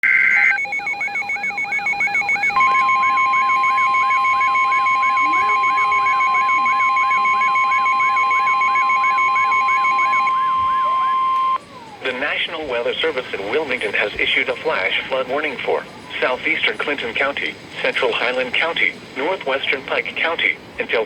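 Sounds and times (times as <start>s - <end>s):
pulsing electronic beep: 0.0s - 11.6s
steady alarm tone: 0.0s - 11.6s
digital data burst: 0.2s - 10.7s.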